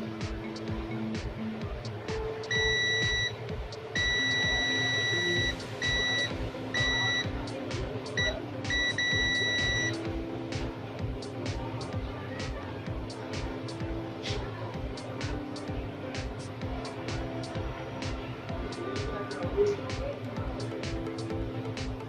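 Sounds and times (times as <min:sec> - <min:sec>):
background music with beat: 0:00.0 - 0:22.0
high electronic beep: 0:02.5 - 0:03.4, 0:04.0 - 0:07.4, 0:08.1 - 0:10.0.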